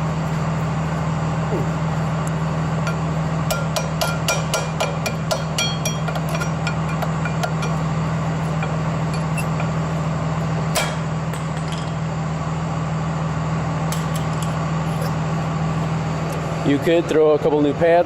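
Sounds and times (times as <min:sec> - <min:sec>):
low machine drone: 0:00.0 - 0:18.0
metallic clinks: 0:02.9 - 0:07.8.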